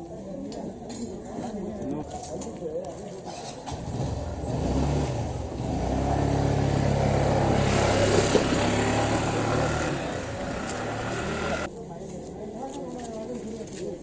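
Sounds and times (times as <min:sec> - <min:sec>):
vehicle engine passing: 0:03.8 - 0:11.7.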